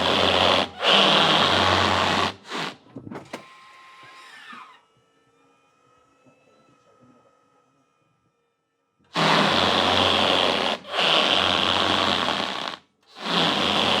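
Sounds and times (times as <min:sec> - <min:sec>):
tyres screeching: 0:00.0 - 0:02.8, 0:09.2 - 0:14.0.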